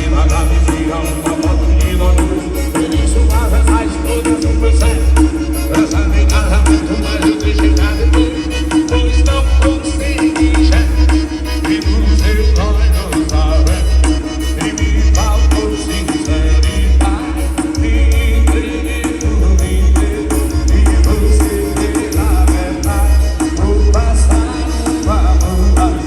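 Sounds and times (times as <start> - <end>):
loud song with pulsing bass: 0.0 - 26.0.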